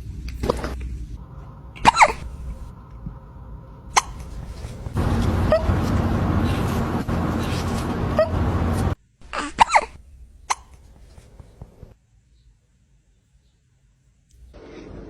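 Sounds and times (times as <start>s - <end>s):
loud steady rumble: 1.2s - 9.0s
kitten hiccuping: 1.8s - 2.7s, 3.9s - 4.8s, 9.3s - 10.9s.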